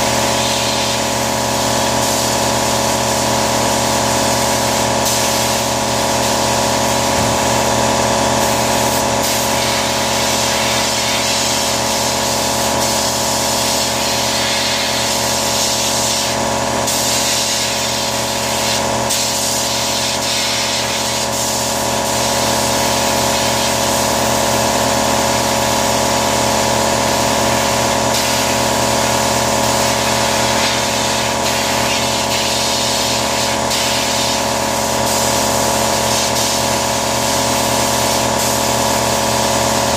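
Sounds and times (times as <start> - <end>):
machine hum: 6.4 - 9.5
sandblaster hissing: 8.4 - 11.7.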